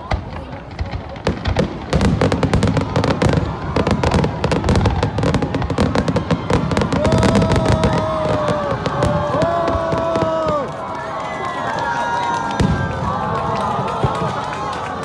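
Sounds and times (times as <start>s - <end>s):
fireworks crackling and banging: 0.0s - 15.0s.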